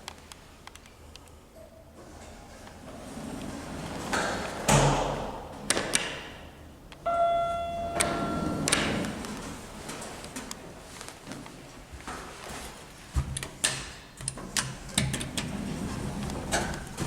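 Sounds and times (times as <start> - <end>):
electronic chime tone: 7.1 - 9.1
lift doors moving: 7.1 - 10.9.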